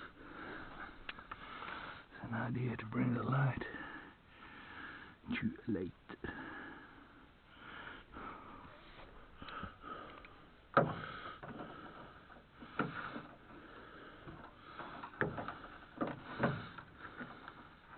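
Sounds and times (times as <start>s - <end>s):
sharp knocks and clunks: 10.7s - 13.6s, 14.2s - 17.4s.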